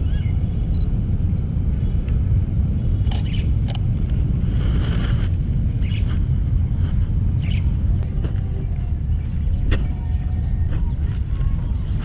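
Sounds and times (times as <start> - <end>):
bird chirps: 0.0 - 2.0, 2.8 - 3.6, 5.8 - 6.1, 7.4 - 12.0
road traffic rumble: 0.0 - 12.0
sharp clicks: 3.0 - 3.8.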